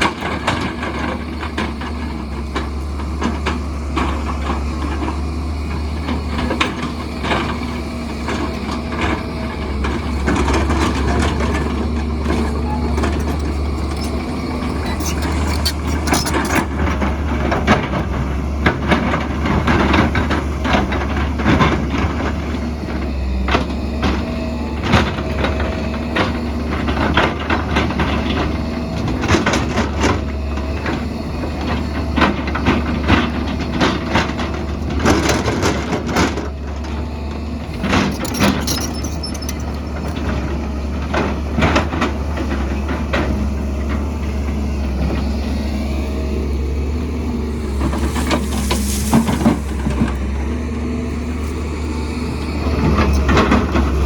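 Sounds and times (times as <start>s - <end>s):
excavator diesel engine humming: 0.0s - 54.0s
bucket striking and scraping rock: 11.7s - 16.8s, 47.3s - 50.6s.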